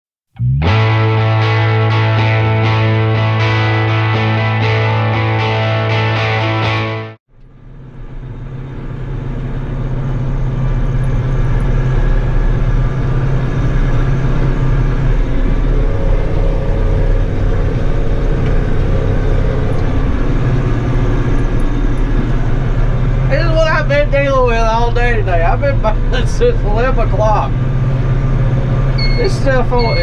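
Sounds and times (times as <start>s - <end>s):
tractor engine running: 0.4s - 30.0s.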